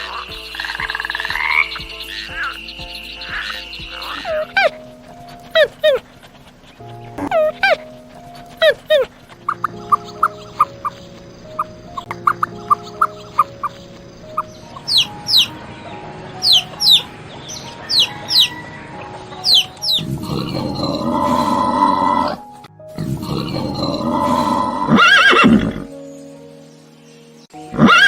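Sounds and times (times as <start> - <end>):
background music: 0.0 - 28.0
horse neighing: 23.0 - 25.9, 27.8 - 28.0.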